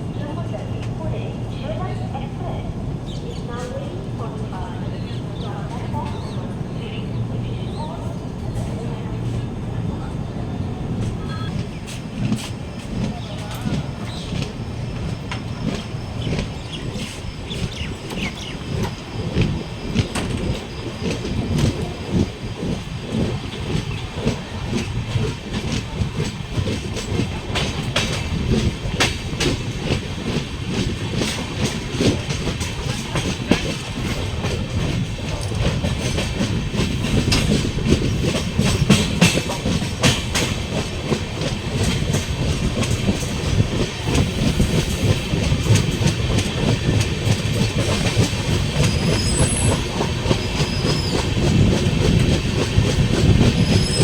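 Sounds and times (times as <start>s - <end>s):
train wheels rumbling on rails: 0.0s - 54.0s
wheels clacking over rail joints: 11.0s - 54.0s.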